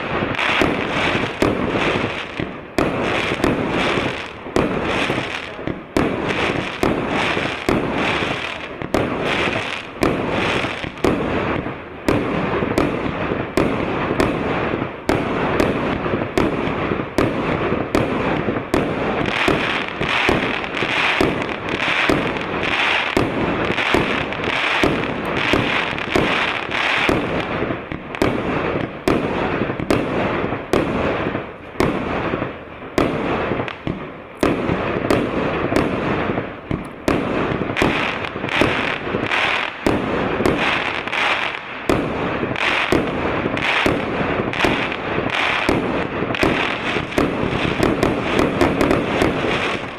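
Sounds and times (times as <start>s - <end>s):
fireworks cake firing shots: 0.0s - 49.9s.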